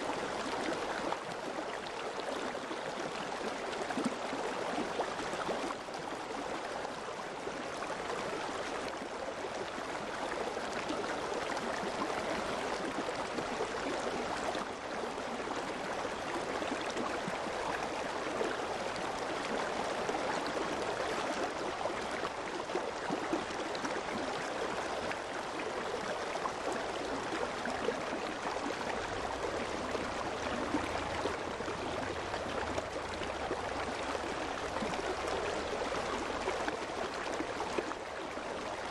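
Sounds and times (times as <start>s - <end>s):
steady rain patter: 0.0s - 38.9s.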